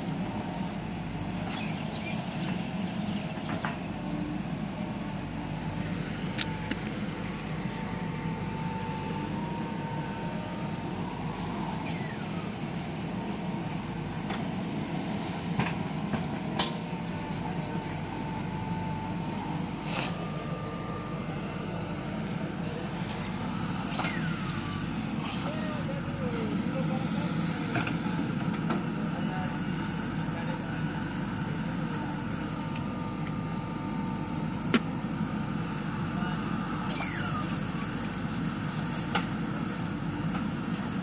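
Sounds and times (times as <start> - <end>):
diesel engine running under load: 0.0 - 41.0
high steady whine: 0.0 - 41.0.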